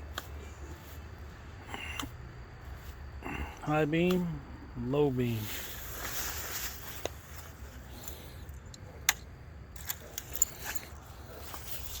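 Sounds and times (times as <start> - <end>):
low steady hum: 0.0 - 12.0
sharp clicks and light rattles: 8.0 - 12.0.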